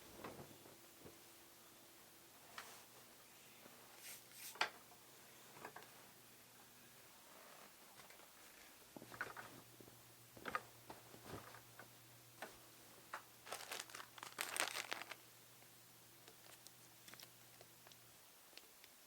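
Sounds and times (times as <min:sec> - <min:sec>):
wrapping crinkling and rustling: 0:13.4 - 0:15.3, 0:16.2 - 0:18.0.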